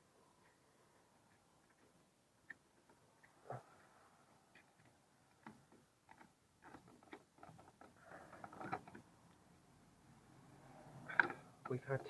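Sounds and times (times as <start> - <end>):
faint irregular clicks: 0.2 - 9.5.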